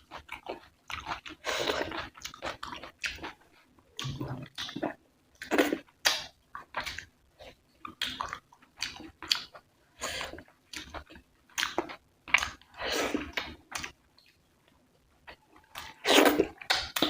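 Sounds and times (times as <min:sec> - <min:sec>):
wet chewing and smacking: 0:00.0 - 0:07.1, 0:07.8 - 0:09.7.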